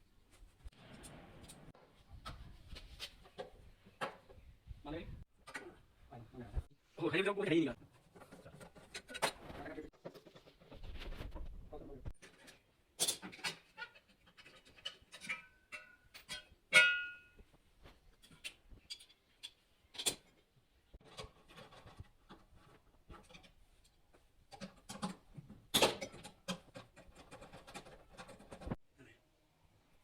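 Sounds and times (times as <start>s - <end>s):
clicks and knocks of parts and tools: 5.4s - 5.8s, 7.9s - 10.7s, 12.1s - 28.8s.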